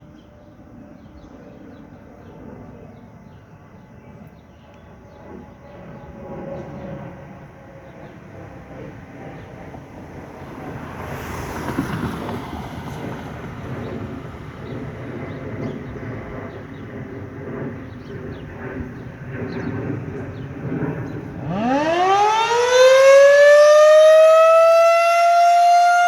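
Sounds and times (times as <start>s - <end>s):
traffic noise: 7.4s - 17.2s, 17.8s - 26.0s
distant siren tone: 20.4s - 26.0s.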